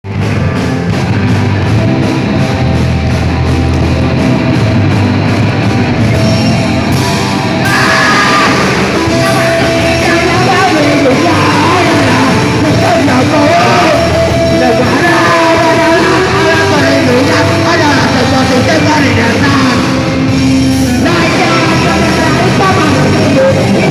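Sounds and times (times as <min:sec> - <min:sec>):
loud rock music: 0:00.0 - 0:23.9
person singing: 0:07.6 - 0:20.0, 0:21.0 - 0:23.9.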